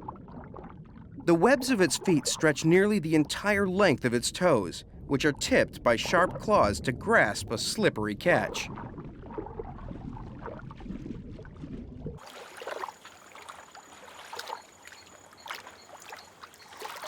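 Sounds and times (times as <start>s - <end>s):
water sloshing and splashing: 0.0s - 17.0s
low rumble: 4.4s - 12.2s.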